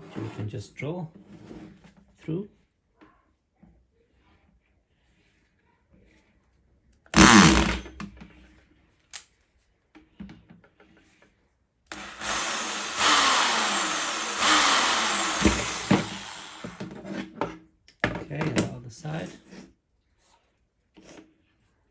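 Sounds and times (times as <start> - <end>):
power drill whining: 7.2 - 7.8, 11.9 - 16.9.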